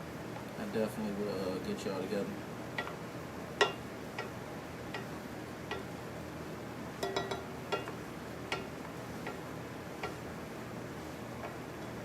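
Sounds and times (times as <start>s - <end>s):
cookware clinking: 7.0s - 8.7s.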